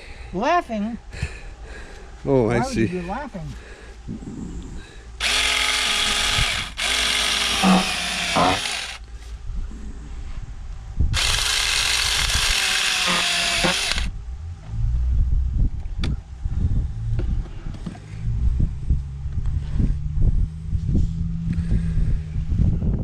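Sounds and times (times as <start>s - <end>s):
chainsaw cutting into pumpkin: 5.2s - 9.0s, 11.2s - 14.1s.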